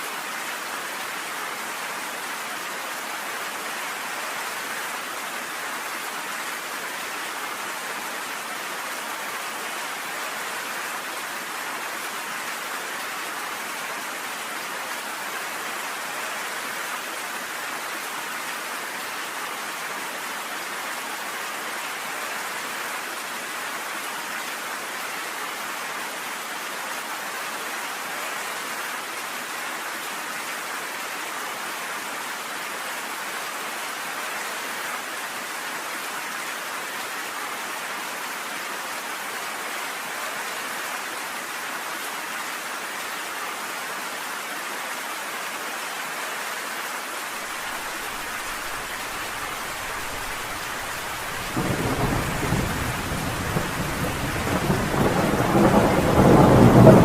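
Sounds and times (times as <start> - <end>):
rain falling: 0.0 - 57.0
thunder rumbling: 49.8 - 57.0.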